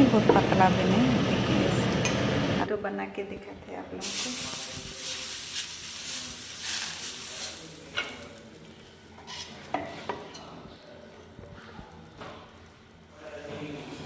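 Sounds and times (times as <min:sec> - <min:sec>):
batter sizzling on a griddle: 0:04.0 - 0:13.9.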